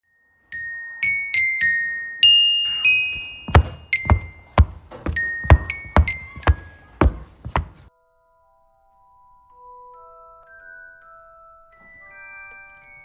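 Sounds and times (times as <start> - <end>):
bell-like mallet melody: 0.5 - 7.0
sharp knocks or taps: 3.5 - 7.9.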